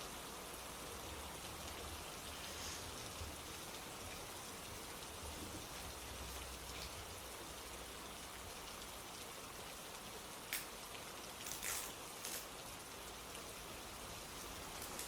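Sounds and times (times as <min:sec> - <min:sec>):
rain falling: 0:00.0 - 0:15.0.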